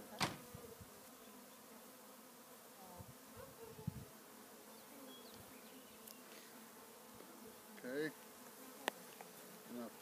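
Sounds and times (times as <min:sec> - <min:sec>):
bees buzzing faintly: 0:00.0 - 0:10.0.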